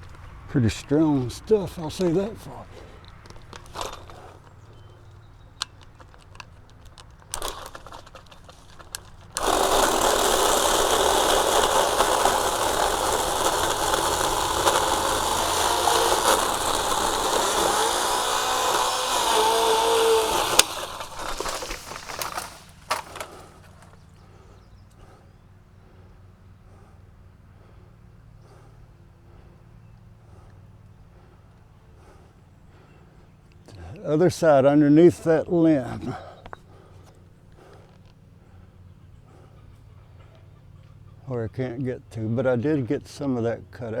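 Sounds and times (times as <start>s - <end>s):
pole saw cutting tree limb: 0.0s - 24.0s
light clicks and rustles: 1.9s - 9.6s, 20.4s - 24.2s.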